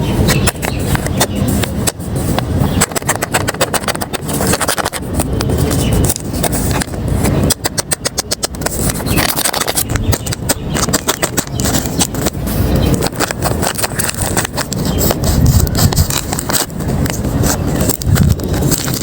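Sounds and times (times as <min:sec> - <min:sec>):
paper crinkling and rustling: 0:00.0 - 0:19.0.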